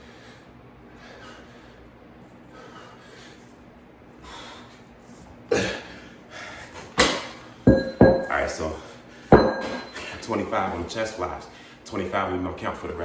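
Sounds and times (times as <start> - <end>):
man breathing hard: 0.0 - 4.9, 5.6 - 6.8.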